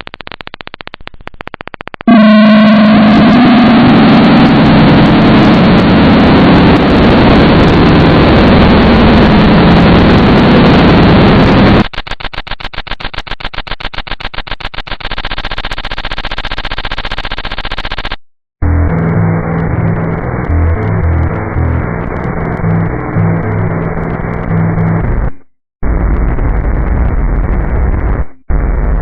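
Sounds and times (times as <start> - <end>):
rapid stuttering clicks: 0.0 - 25.4
distorted digital static: 0.0 - 29.0
steady buzz: 2.1 - 11.9, 18.6 - 26.6.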